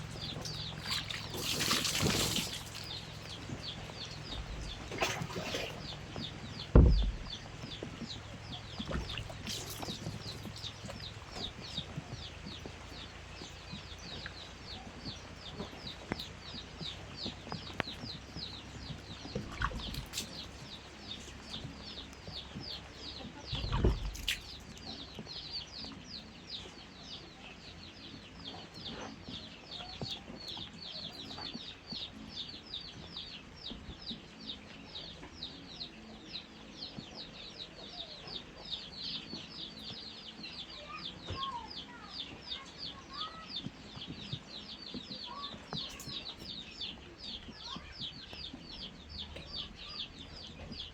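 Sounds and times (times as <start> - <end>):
chicks peeping: 0.0 - 50.9
low thumps: 3.0 - 12.7.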